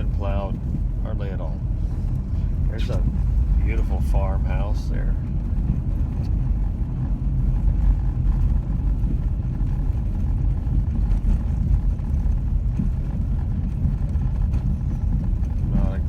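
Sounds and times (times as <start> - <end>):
car engine and tyres on snow: 0.0 - 16.0.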